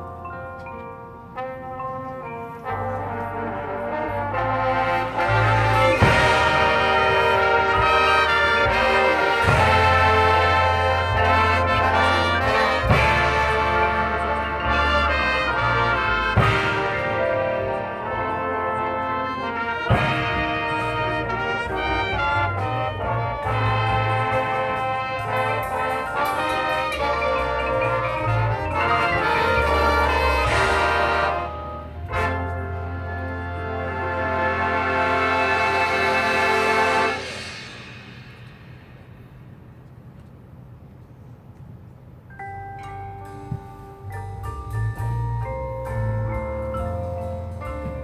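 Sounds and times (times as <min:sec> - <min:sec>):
brass band playing chords: 0:00.0 - 0:39.2, 0:43.4 - 0:48.0
sharp percussion hit: 0:04.4 - 0:19.0, 0:19.6 - 0:32.5, 0:35.0 - 0:40.2.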